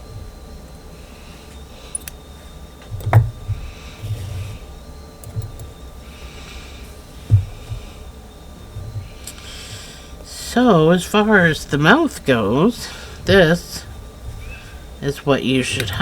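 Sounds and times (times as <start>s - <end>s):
dull thumps: 2.9s - 3.7s, 7.2s - 7.9s.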